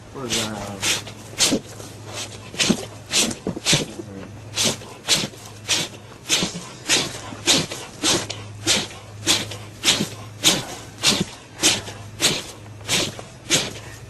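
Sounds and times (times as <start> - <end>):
animal sneezing: 0.3 - 14.0.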